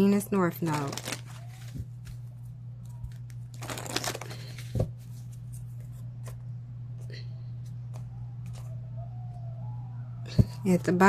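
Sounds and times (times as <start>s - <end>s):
steady low hum: 0.0s - 11.0s
card rustle: 0.6s - 6.4s.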